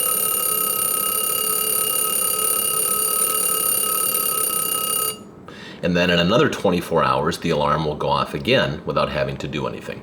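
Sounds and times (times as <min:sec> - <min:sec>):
alarm clock ringing: 0:00.0 - 0:05.3.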